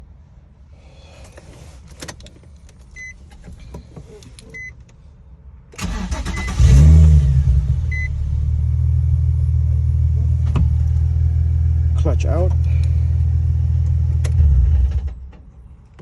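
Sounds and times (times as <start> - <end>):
car engine starter cranking: 5.8 - 8.0
car engine idling: 5.8 - 15.1
dashboard warning chime beeping: 7.9 - 8.1.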